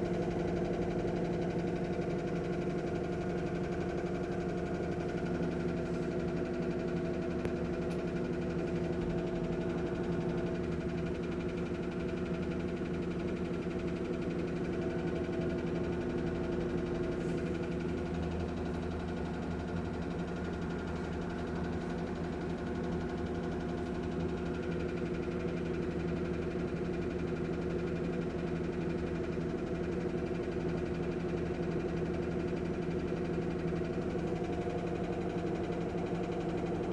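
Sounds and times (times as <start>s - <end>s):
washing machine spinning: 0.0s - 36.9s.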